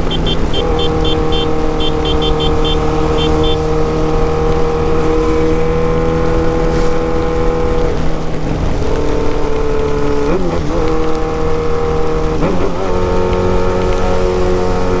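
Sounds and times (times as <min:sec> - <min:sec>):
motorcycle engine running loud: 0:00.0 - 0:08.7.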